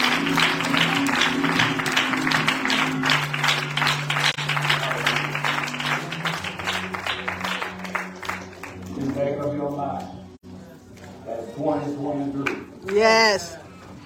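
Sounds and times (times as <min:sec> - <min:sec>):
congregation clapping: 0:00.0 - 0:09.4, 0:12.4 - 0:13.5.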